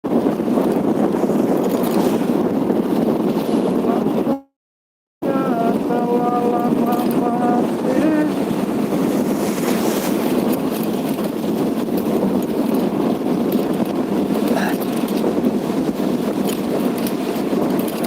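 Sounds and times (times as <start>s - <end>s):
wind buffeting microphone: 0.0s - 4.5s, 5.2s - 18.0s
moving vehicle running: 5.3s - 18.0s.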